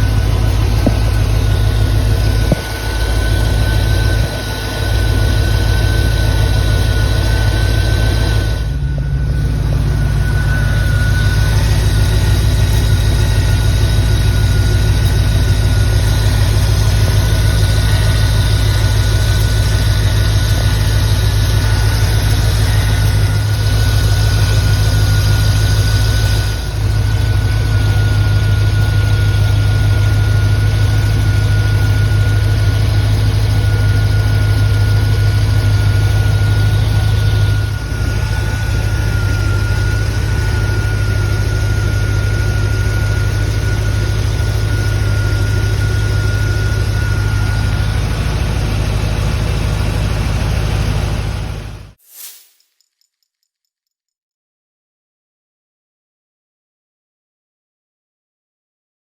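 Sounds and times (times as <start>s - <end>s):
car engine idling: 0.0s - 52.0s
steady high whine: 0.0s - 52.8s.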